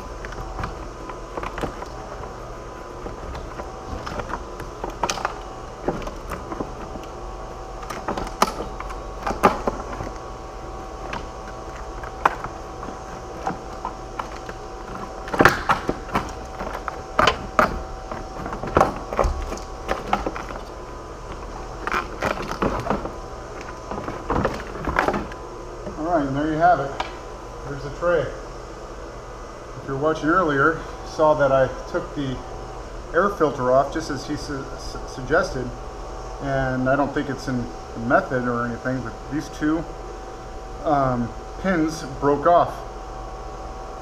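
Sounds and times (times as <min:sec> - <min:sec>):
knocks clicks and scrapes of metal: 0:00.0 - 0:10.3, 0:10.9 - 0:26.0
faint steady hum: 0:00.0 - 0:44.0.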